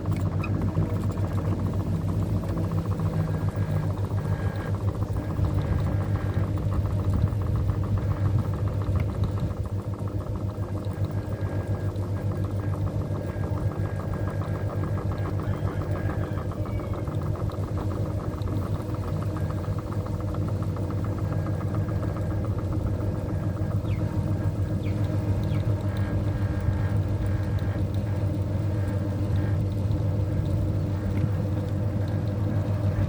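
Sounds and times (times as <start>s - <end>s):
ceiling fan running: 0.0s - 33.0s.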